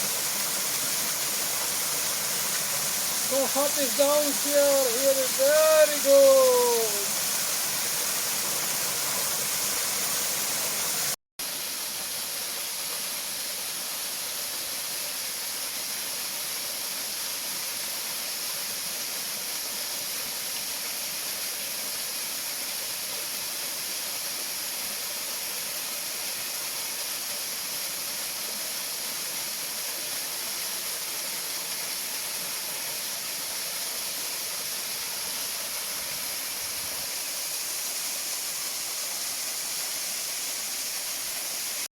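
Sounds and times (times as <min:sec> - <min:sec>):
waterfall rushing: 0:00.0 - 0:11.2.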